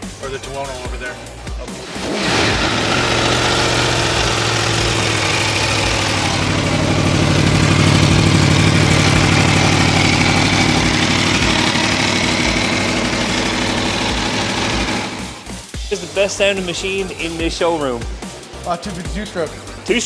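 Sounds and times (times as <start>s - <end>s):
motorcycle engine idling: 0.5s - 15.7s.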